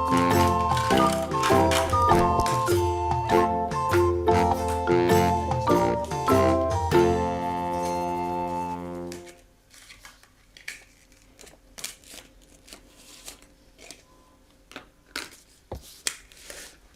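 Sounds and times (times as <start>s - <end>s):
plastic toy pieces clicking: 0.0s - 2.8s.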